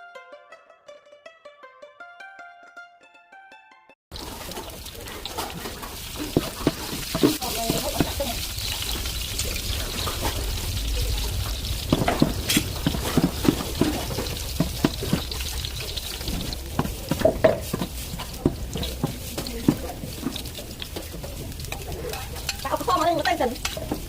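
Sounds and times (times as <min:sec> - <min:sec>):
food sizzling in a pan: 0:04.1 - 0:24.0
utensil knocking and scraping pan: 0:04.2 - 0:09.2, 0:11.6 - 0:24.0.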